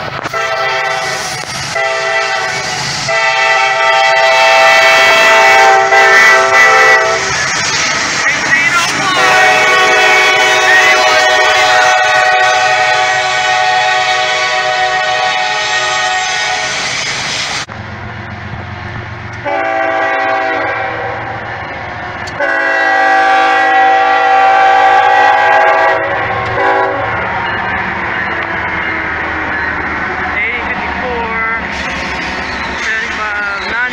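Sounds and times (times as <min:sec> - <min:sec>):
locomotive air horn: 0:00.2 - 0:07.4, 0:08.9 - 0:16.8, 0:19.4 - 0:21.5, 0:22.4 - 0:27.2.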